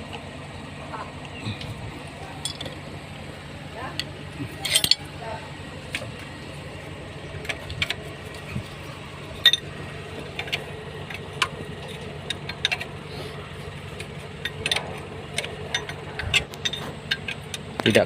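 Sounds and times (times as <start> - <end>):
steady low hum: 0.0 - 18.0
tools clicking and clinking: 2.4 - 2.8, 4.0 - 5.1, 7.3 - 13.0, 13.6 - 18.0.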